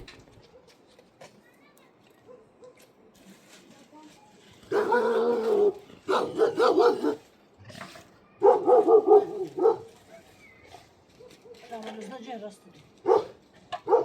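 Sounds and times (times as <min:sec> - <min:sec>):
dog barking and crying: 0:04.7 - 0:07.2, 0:08.4 - 0:10.0, 0:13.0 - 0:14.0.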